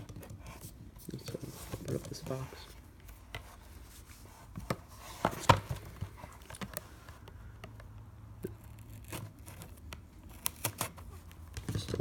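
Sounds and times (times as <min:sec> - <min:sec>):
box being handled and opened: 0:00.0 - 0:07.3.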